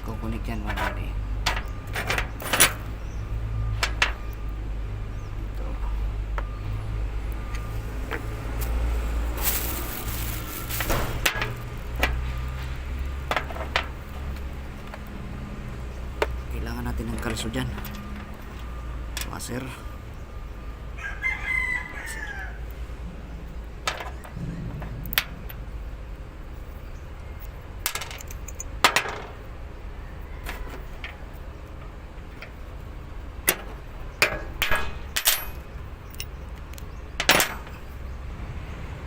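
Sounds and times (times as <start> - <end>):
metal tools clicking and clinking: 0.6 - 3.1, 9.4 - 12.2, 17.1 - 19.4, 27.4 - 29.5, 33.4 - 38.0.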